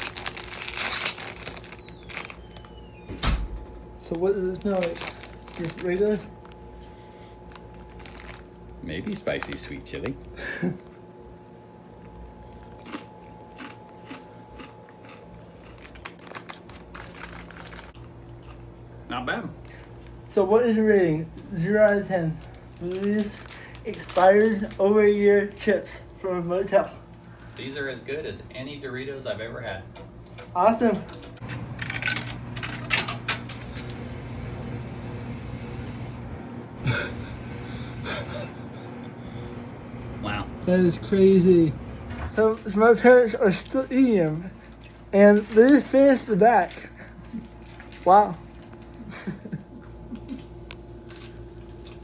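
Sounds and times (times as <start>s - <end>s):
person chewing crisp chips: 0.0s - 2.7s, 4.2s - 9.5s, 11.9s - 18.9s
low mechanical hum: 0.0s - 52.0s.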